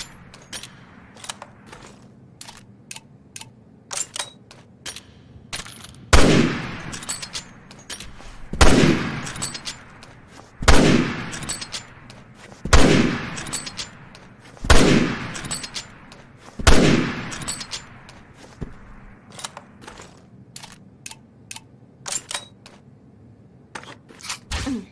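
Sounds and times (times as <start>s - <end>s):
rifle shots with echoing tail: 6.1s - 7.1s, 8.6s - 9.5s, 10.6s - 11.5s, 12.7s - 13.8s, 14.7s - 15.7s, 16.6s - 17.5s.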